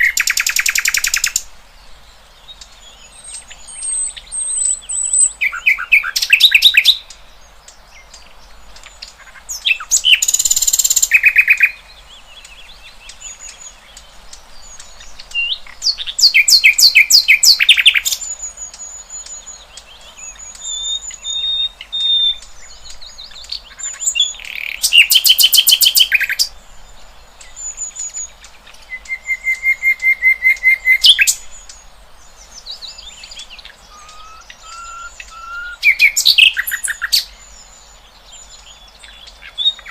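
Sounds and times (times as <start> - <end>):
songbirds singing fast repeated notes: 0.0 - 39.9
thin high bird whistles and chirps: 3.2 - 7.0, 14.6 - 26.5, 27.4 - 31.8, 32.6 - 37.8.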